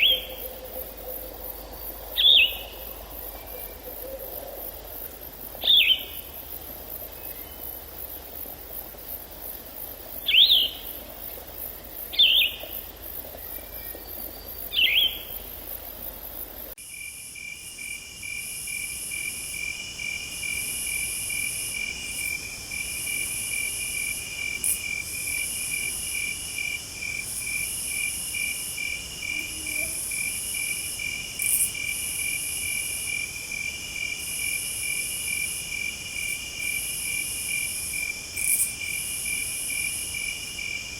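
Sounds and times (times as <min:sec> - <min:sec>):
bird calls: 0:00.0 - 0:04.7
crickets trilling: 0:00.0 - 0:40.9.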